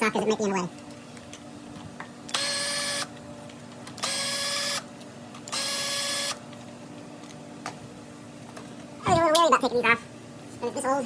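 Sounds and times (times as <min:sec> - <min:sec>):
cordless drill running: 0:02.3 - 0:03.1, 0:04.0 - 0:04.9, 0:05.5 - 0:06.4.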